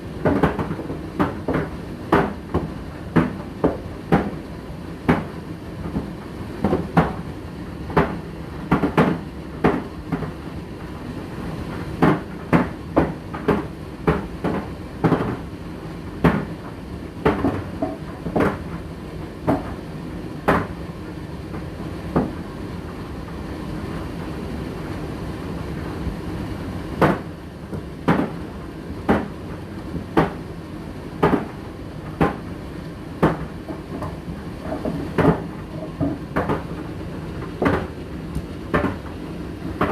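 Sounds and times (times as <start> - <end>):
tumble dryer motor hum: 0.0 - 39.9.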